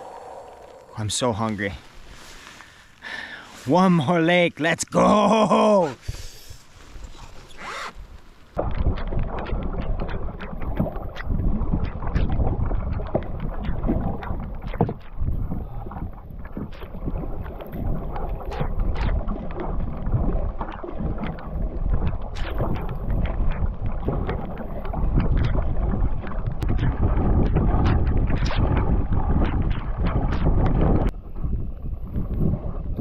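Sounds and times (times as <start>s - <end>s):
paddle splashes and drips: 0.0s - 3.7s, 6.0s - 33.0s
wind buffeting microphone: 7.9s - 33.0s.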